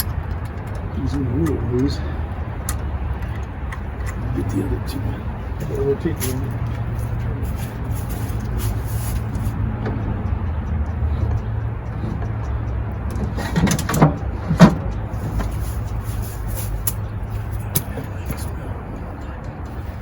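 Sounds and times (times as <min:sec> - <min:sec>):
tools knocking on motor: 0:09.8 - 0:16.0.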